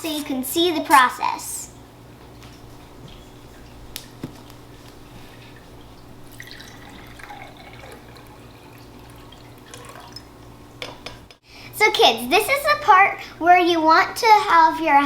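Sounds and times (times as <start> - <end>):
water dripping and trickling: 2.2 - 11.1.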